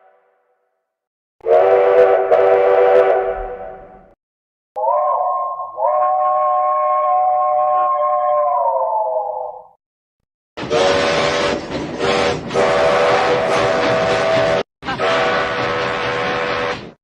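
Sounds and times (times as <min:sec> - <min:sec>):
train whistle blasts: 0:01.4 - 0:04.1, 0:04.8 - 0:08.3, 0:10.6 - 0:17.0.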